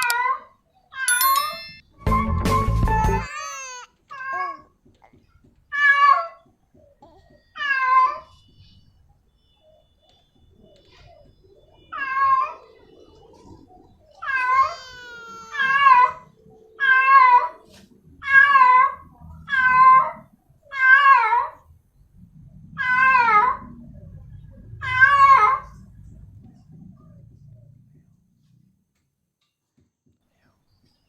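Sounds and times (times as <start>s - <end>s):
cat meowing: 3.2s - 4.6s, 14.2s - 17.6s.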